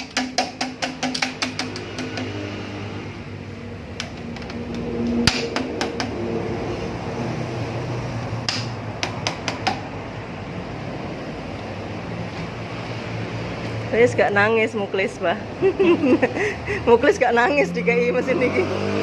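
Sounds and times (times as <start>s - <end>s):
metal parts knocking and clicking: 0.0s - 2.4s.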